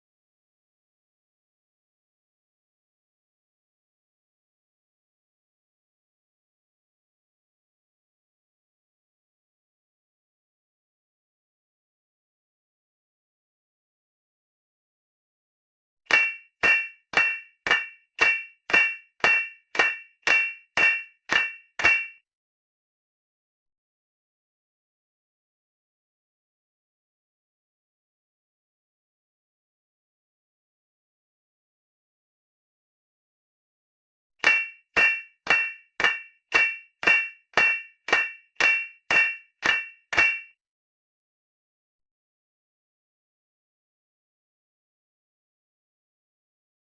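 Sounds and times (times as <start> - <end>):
hammer clanging on steel: 16.1 - 22.2, 34.4 - 40.6.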